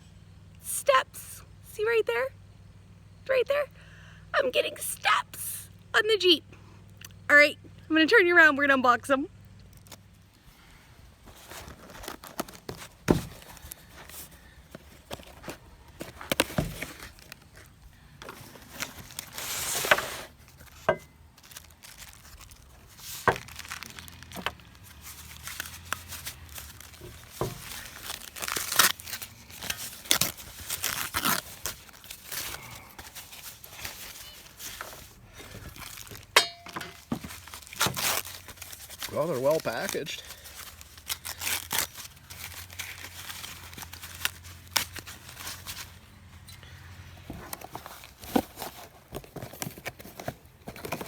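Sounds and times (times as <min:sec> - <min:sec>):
wrapping crinkling and tearing: 0:11.2 - 0:46.0.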